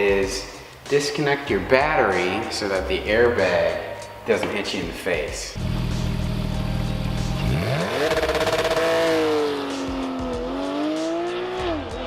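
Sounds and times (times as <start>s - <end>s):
car engine revving: 5.6s - 12.0s.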